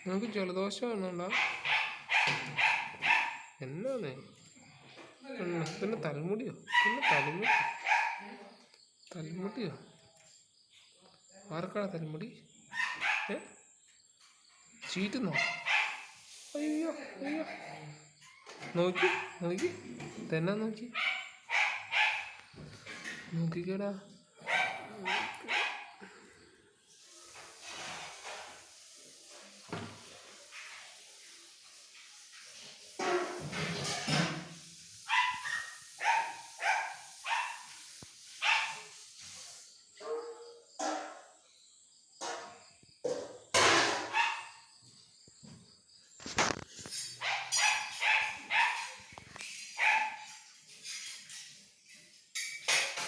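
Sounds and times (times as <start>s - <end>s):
cockatiel hissing: 15.6s - 16.8s, 26.9s - 39.7s.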